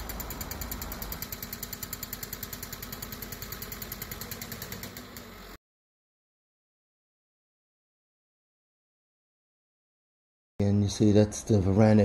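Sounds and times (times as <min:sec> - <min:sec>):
tractor engine idling: 0:00.0 - 0:05.5.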